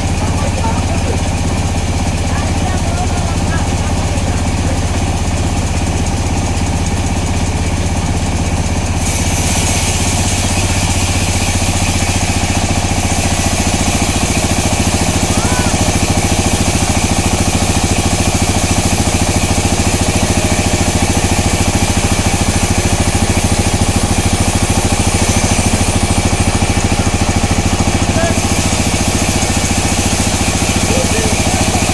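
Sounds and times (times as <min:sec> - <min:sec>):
sawmill machinery running: 0:00.0 - 0:31.9
saw hissing through timber: 0:09.0 - 0:31.9.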